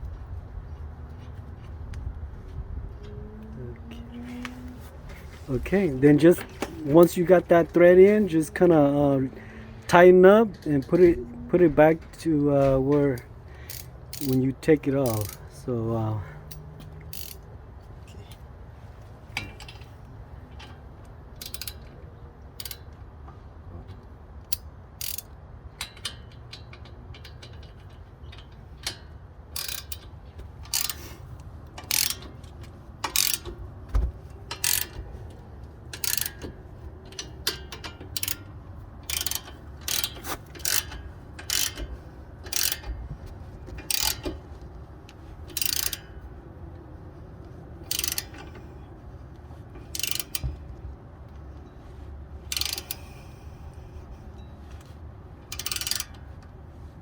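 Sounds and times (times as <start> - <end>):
ratchet wrench clicking: 13.6 - 15.5, 16.4 - 17.5, 19.3 - 19.9, 21.4 - 21.9, 22.5 - 23.0, 24.4 - 33.6, 34.5 - 35.3, 35.9 - 43.0, 43.7 - 44.5, 45.5 - 46.3, 47.8 - 48.7, 49.8 - 50.7, 52.5 - 53.8, 55.5 - 56.3.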